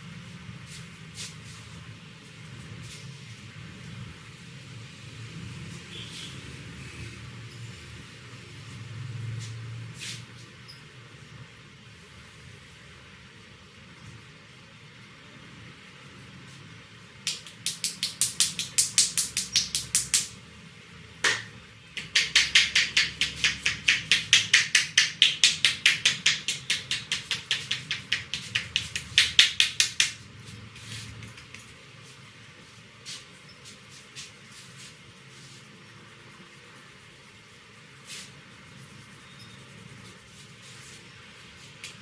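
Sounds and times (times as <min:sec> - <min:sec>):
hand slaps on head: 0:17.3 - 0:20.3, 0:21.2 - 0:30.2.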